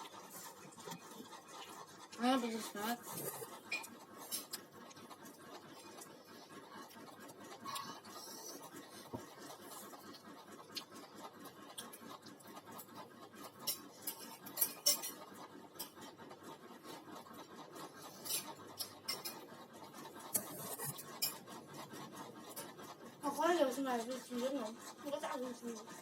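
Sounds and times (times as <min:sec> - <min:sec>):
spoon scraping on a plate: 0:13.6 - 0:15.2, 0:18.1 - 0:19.5.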